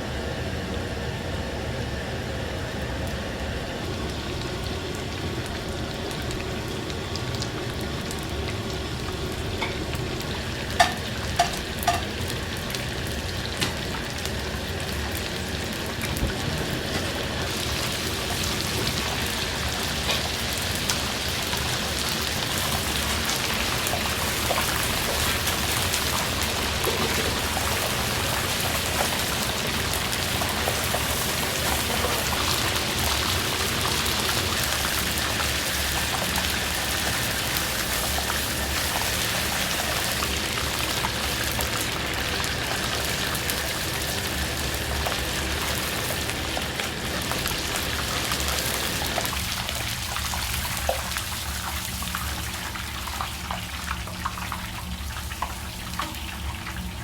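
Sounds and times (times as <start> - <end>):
pork deep-frying in hot oil: 0.0 - 57.0.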